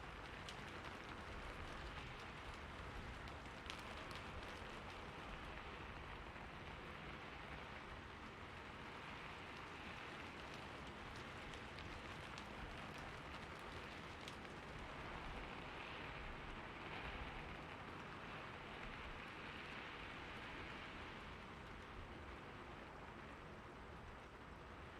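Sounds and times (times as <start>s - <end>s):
rain falling on a roof: 0.0s - 24.9s.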